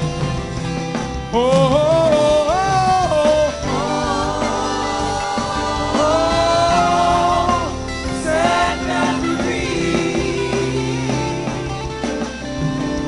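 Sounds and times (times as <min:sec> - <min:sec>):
live band with guitar: 0:00.0 - 0:13.0
singer holding long notes: 0:01.3 - 0:11.7.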